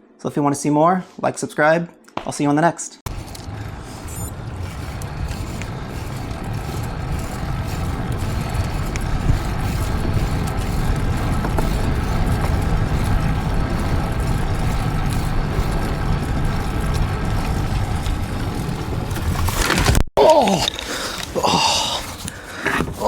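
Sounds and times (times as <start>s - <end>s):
wind buffeting microphone: 3.1s - 19.5s
tyre road noise: 3.1s - 23.0s.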